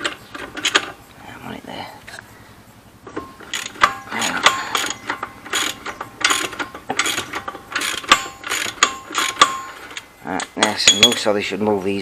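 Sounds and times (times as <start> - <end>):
ratchet wrench clicking: 3.4 - 11.3.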